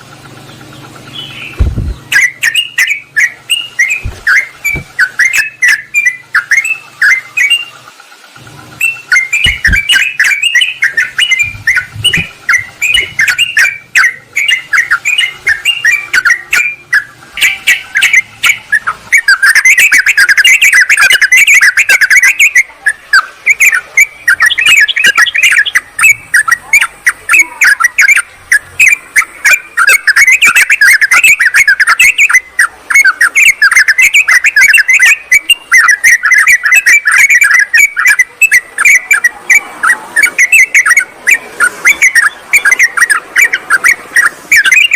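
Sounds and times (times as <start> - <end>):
birds chattering: 0.0 - 44.9.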